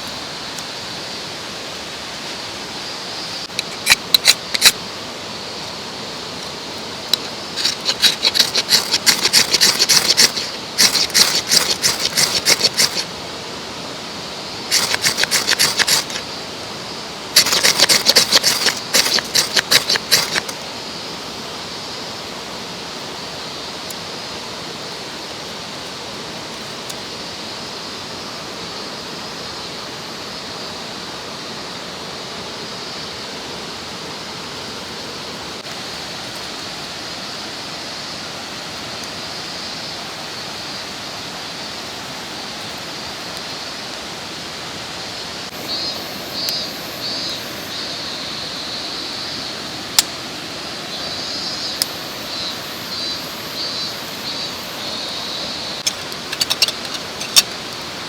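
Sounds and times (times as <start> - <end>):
mountain stream rushing: 0.0 - 58.0
handsaw cutting wood: 7.6 - 13.1, 14.7 - 16.2, 17.4 - 20.5.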